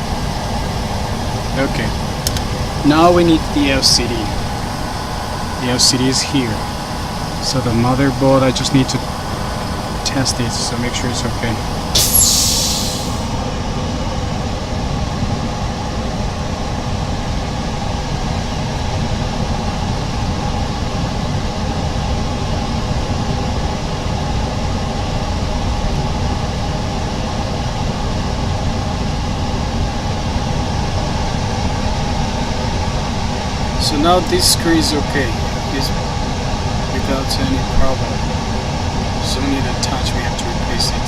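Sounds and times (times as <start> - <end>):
short hiss: 12.0 - 13.3.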